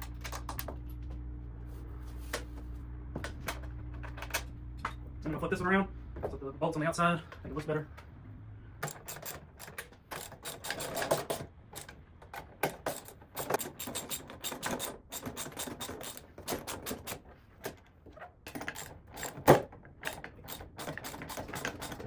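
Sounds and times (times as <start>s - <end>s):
metal hardware clicking and rattling: 8.8s - 22.0s.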